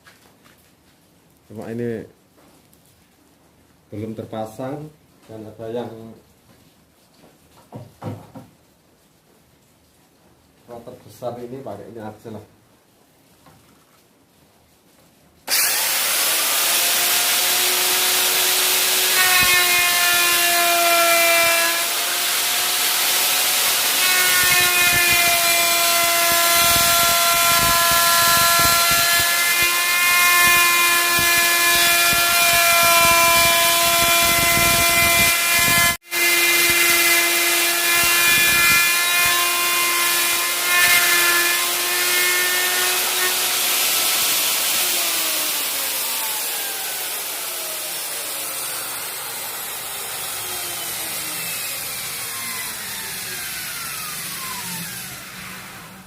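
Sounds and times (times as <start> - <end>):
wood router cutting: 15.5 - 56.0.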